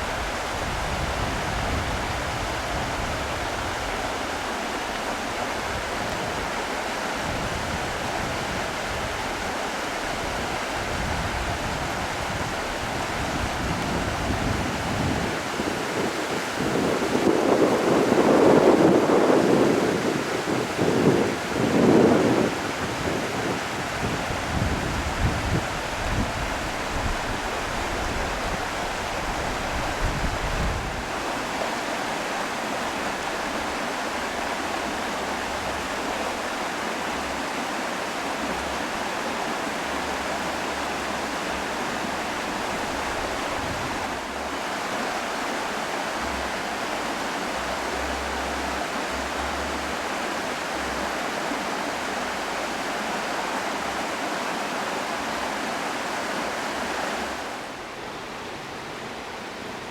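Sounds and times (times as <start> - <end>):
wind rumble on microphone: 0.0 - 31.7, 38.4 - 53.0
river rushing over rocks: 0.0 - 59.9.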